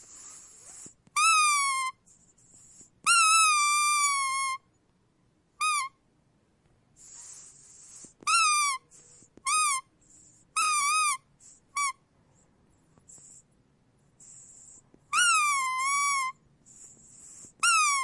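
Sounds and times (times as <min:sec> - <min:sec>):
soft airy hiss: 0:00.0 - 0:01.2, 0:01.9 - 0:03.1, 0:06.6 - 0:10.6, 0:11.2 - 0:15.1, 0:16.3 - 0:17.6
squeak toy squeaking: 0:01.2 - 0:02.1, 0:03.0 - 0:04.7, 0:05.6 - 0:06.0, 0:07.9 - 0:09.9, 0:10.5 - 0:12.0, 0:14.5 - 0:18.0.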